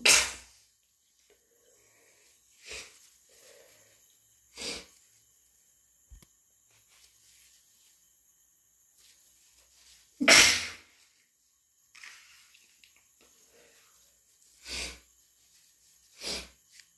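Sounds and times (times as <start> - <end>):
person sneezing: 0.0 - 0.5, 10.2 - 10.9
faint breaths: 1.3 - 5.0.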